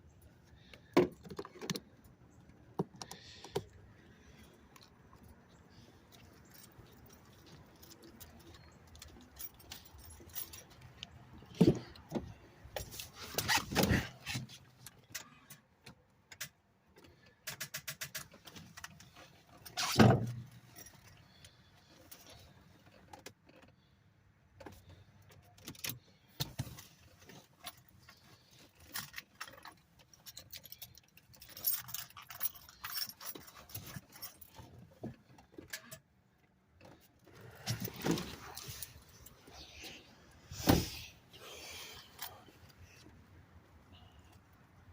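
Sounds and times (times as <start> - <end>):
keys jangling: 28.8 - 34.7.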